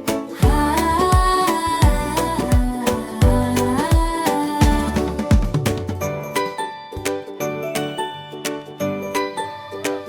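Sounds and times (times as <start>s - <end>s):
sliding melody line: 0.0s - 10.0s
electronic kick drum: 0.4s - 5.8s.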